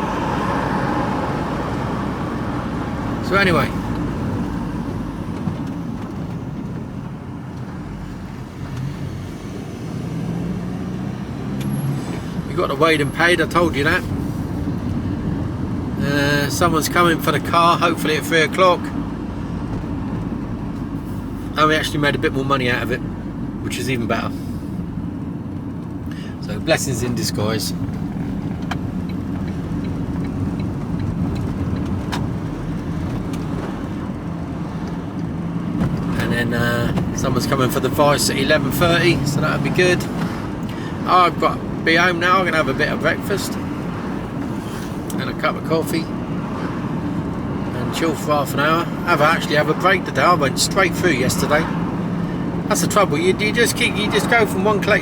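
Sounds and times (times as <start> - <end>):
van engine and tyre rumble: 0.0 - 55.0
light even ticking: 27.7 - 37.9.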